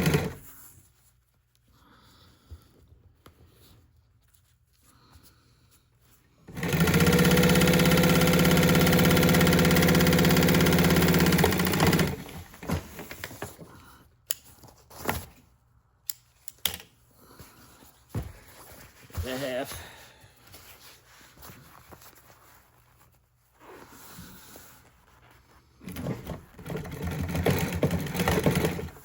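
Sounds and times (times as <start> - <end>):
sewing machine stitching: 0.0 - 0.4, 6.5 - 13.2, 25.8 - 29.0.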